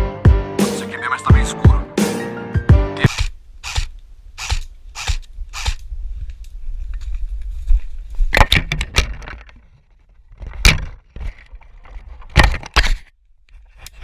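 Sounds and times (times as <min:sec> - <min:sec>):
sharp cracks and snaps: 0:03.1 - 0:06.6.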